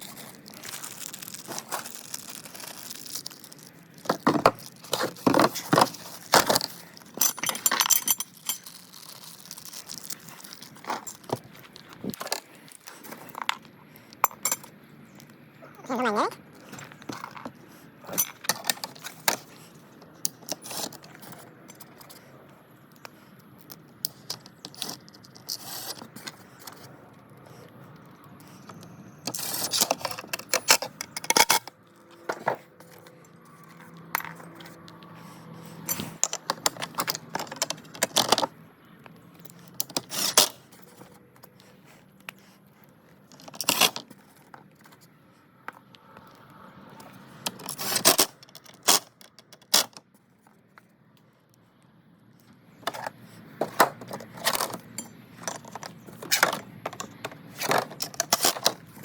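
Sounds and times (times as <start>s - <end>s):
metal parts clinking and rattling: 0.0s - 14.7s, 16.0s - 19.6s, 24.0s - 26.8s, 28.4s - 34.8s, 35.8s - 38.5s, 39.4s - 41.2s, 43.3s - 45.0s, 47.4s - 50.0s, 52.8s - 59.0s.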